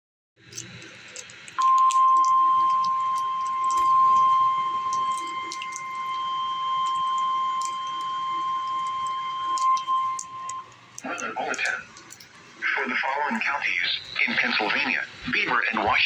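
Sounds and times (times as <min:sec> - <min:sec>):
steady high alarm tone: 0:01.6 - 0:16.0
faint radio hiss: 0:10.9 - 0:16.0.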